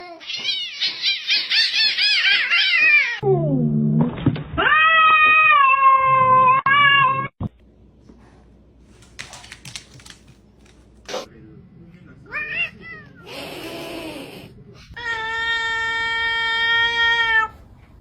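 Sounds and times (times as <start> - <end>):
low falling sound: 3.2 - 4.3.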